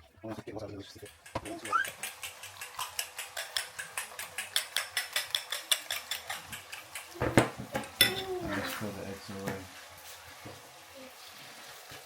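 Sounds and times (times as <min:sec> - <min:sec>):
whisk beating eggs in a bowl: 0:00.4 - 0:07.2.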